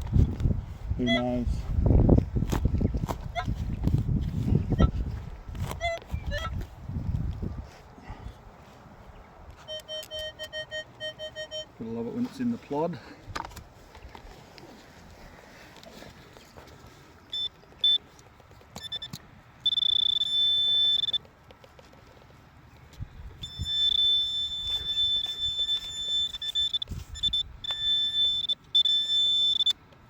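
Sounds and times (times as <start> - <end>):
metal detector tone: 1.0 - 1.5, 9.6 - 12.5, 17.2 - 18.1, 18.8 - 21.3, 23.4 - 29.8.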